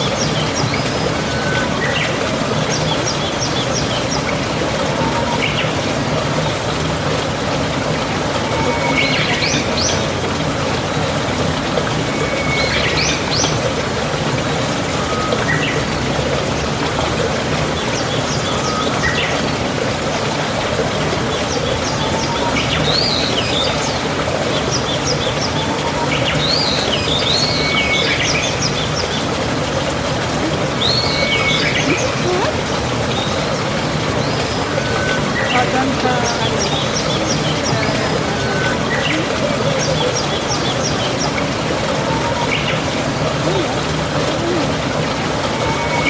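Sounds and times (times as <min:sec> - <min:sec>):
birds whistling and chirping: 0:00.0 - 0:06.6, 0:08.3 - 0:10.2, 0:11.9 - 0:13.8, 0:21.4 - 0:29.4, 0:30.5 - 0:46.0.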